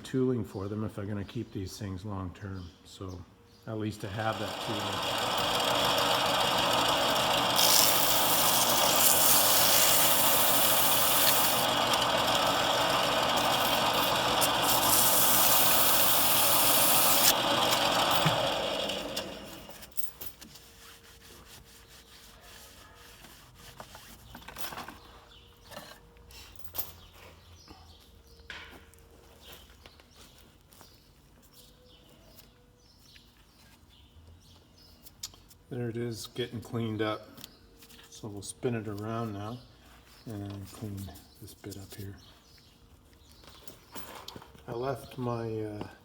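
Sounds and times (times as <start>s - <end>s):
lathe motor running: 4.0s - 19.8s
sandpaper rasping on spinning metal: 4.1s - 19.0s, 20.5s - 24.2s.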